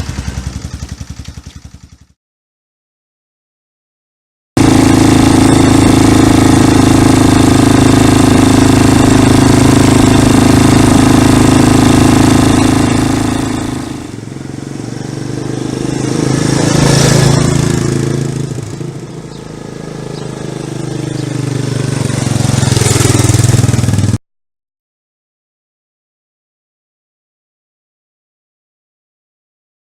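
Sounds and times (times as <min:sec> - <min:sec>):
quad bike engine running: 0:00.0 - 0:02.2, 0:04.6 - 0:24.2.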